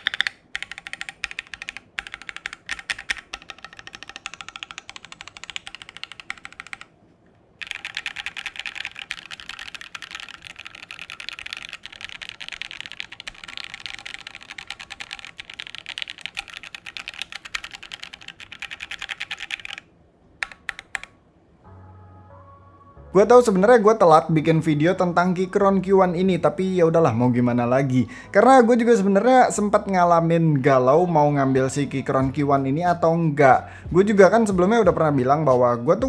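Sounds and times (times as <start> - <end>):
mechanical keyboard typing: 0.0 - 6.9, 7.6 - 21.2.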